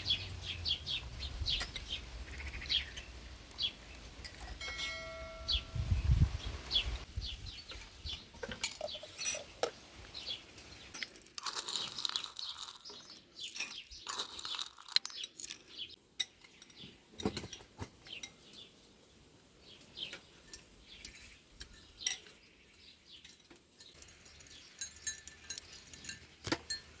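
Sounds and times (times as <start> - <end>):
crunching: 10.9 - 15.9.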